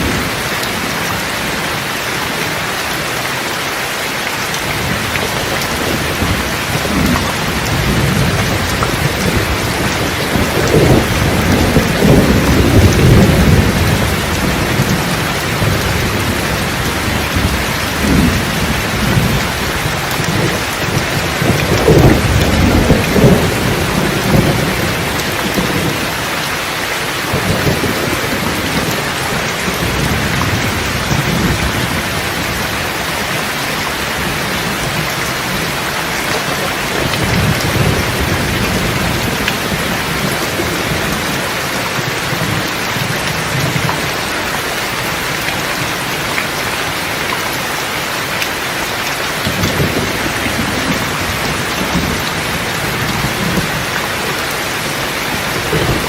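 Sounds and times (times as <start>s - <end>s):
heavy rainfall hiss: 0.0s - 56.0s
rolling thunder: 4.7s - 26.3s, 27.2s - 35.8s, 36.5s - 44.2s, 49.4s - 56.0s.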